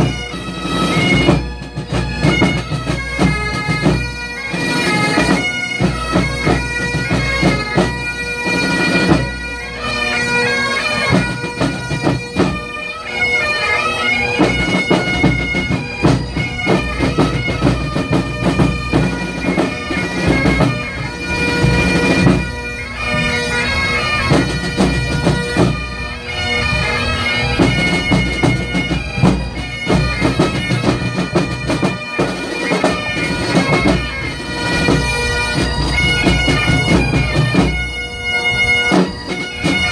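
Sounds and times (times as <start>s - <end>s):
bagpipes playing melody: 0.0s - 39.9s
drum strokes: 14.4s - 22.6s, 27.6s - 37.9s.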